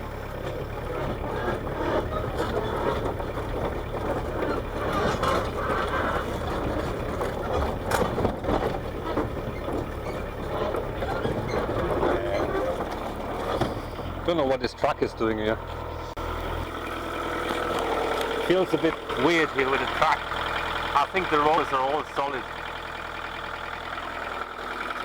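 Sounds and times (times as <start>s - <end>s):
diesel engine idling: 0.0s - 25.0s
track clanks and clicks: 0.0s - 25.0s.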